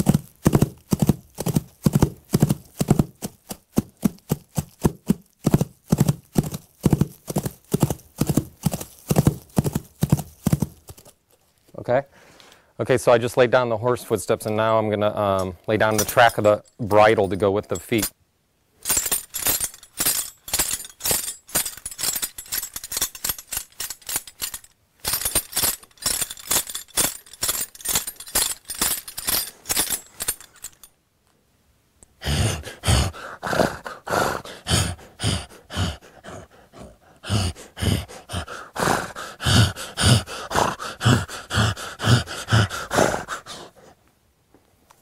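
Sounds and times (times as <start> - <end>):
metal bridle tack jingling: 0.0 - 11.2, 15.4 - 18.2, 18.8 - 31.0, 37.4 - 42.8.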